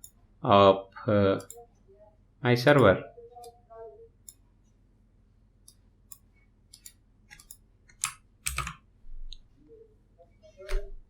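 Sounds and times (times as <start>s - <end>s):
computer keyboard keystrokes: 6.1s - 8.8s.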